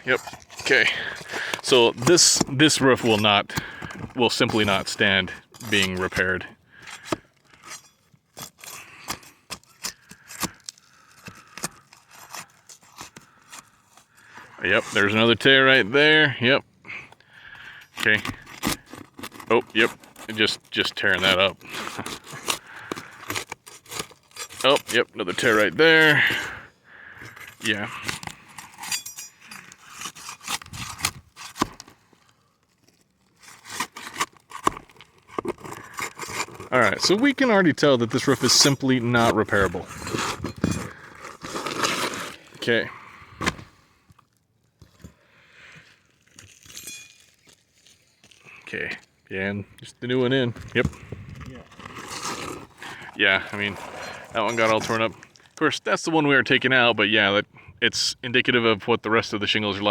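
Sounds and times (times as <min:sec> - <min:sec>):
roof shingles scraping and cracking: 0:00.0 - 0:15.4, 0:17.5 - 0:26.6, 0:27.3 - 0:44.3, 0:45.6 - 0:48.6, 0:50.7 - 0:55.6
roof shingles snapping and scraping: 0:38.6 - 0:42.6.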